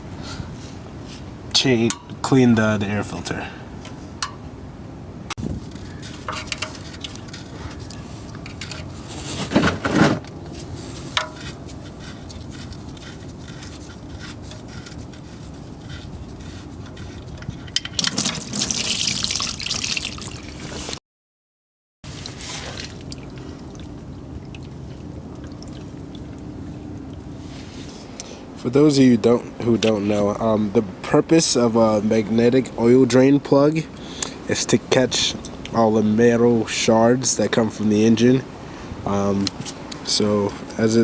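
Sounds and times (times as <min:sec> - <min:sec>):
oil trickling into drain pan: 0:18.0 - 0:20.6.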